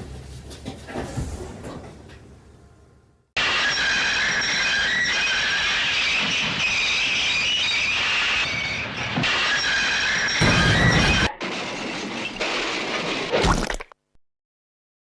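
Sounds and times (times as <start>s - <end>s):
train wheels squealing: 3.4s - 11.3s.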